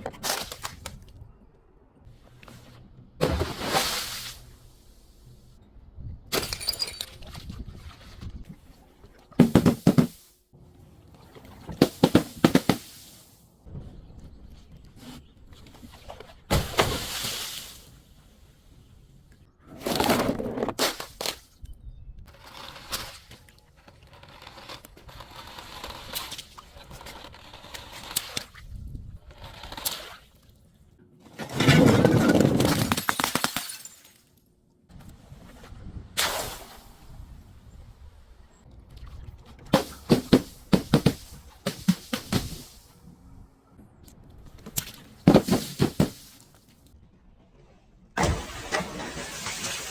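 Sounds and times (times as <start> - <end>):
glass bottles breaking: 6.3 - 7.3, 31.6 - 34.2.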